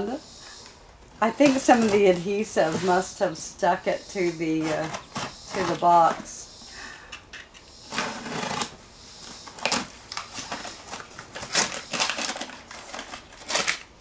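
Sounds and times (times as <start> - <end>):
cardboard box scraping: 1.2 - 3.4, 4.1 - 6.4, 7.9 - 13.8.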